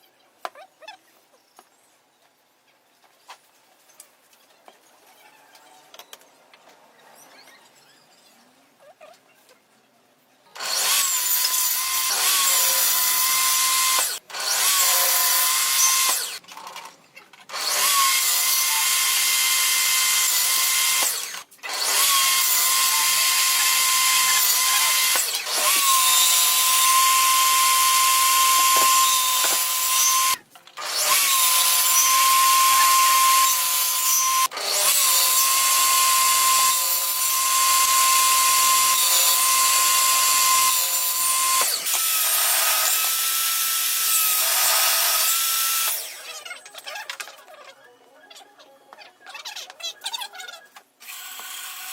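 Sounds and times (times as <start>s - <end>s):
power tool motor whining: 10.6s - 16.8s, 17.5s - 46.3s.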